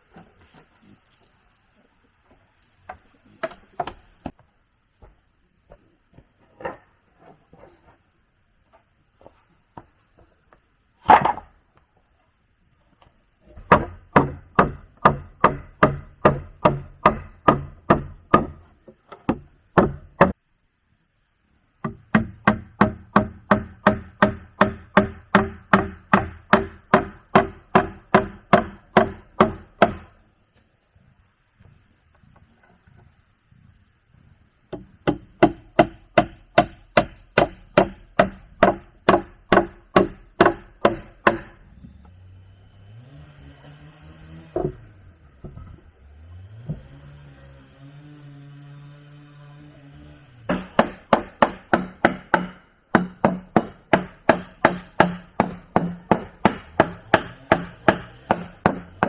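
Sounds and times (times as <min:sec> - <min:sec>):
tool striking wood: 0:03.4 - 0:04.4, 0:13.6 - 0:20.4, 0:21.8 - 0:30.2, 0:34.7 - 0:41.6, 0:44.6 - 0:45.7, 0:50.5 - 0:59.0.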